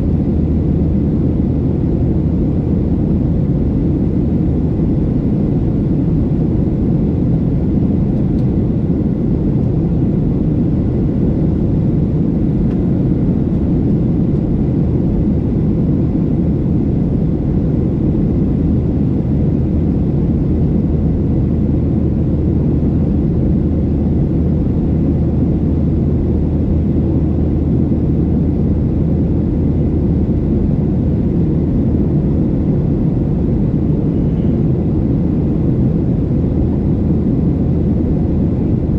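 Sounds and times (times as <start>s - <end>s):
airplane cabin rumble: 0.0s - 38.9s.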